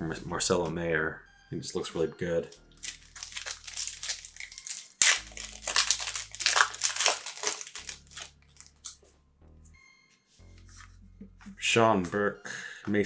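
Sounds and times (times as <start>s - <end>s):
plastic wrapper crinkling and tearing: 2.7s - 9.0s.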